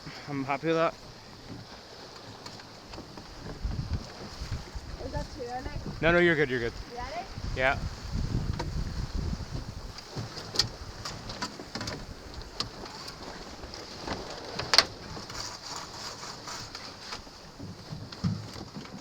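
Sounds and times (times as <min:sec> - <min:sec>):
water rushing past a boat: 0:00.0 - 0:19.0
wind rushing: 0:03.5 - 0:12.6
rigging clicks knocks and rattles: 0:09.8 - 0:13.2.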